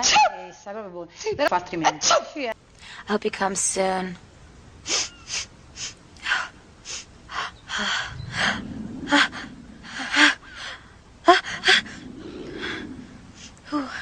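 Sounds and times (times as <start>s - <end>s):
gasping in-breaths: 6.9s - 14.0s.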